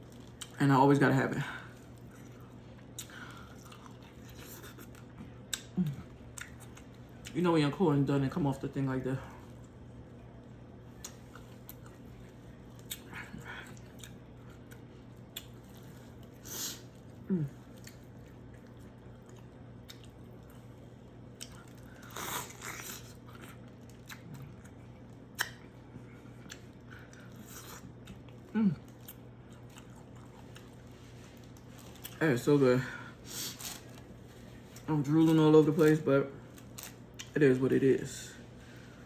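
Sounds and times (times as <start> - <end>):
person chewing corn: 1.7 - 7.4, 10.9 - 32.2
lip smacks: 25.4 - 25.7.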